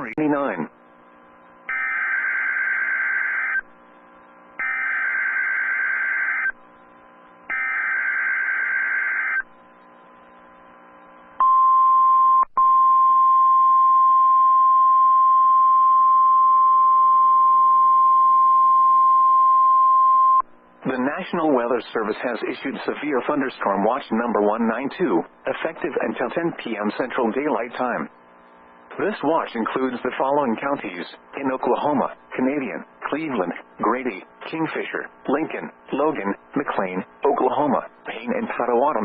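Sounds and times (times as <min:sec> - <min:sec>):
steady warning alarm tone: 0:01.7 - 0:03.6, 0:04.6 - 0:06.6, 0:07.5 - 0:09.4.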